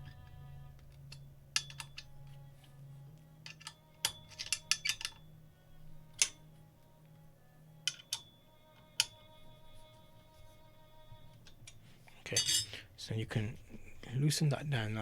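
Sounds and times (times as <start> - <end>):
metal parts clinking: 0.0 - 2.2, 3.4 - 5.2, 7.8 - 8.2, 12.3 - 12.8
faint background music: 0.0 - 15.0.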